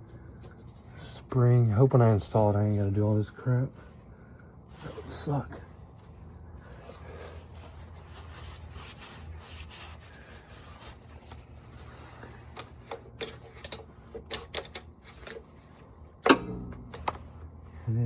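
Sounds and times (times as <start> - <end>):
steady low hum: 0.0 - 18.0
metallic clicks and scraping: 12.4 - 17.3.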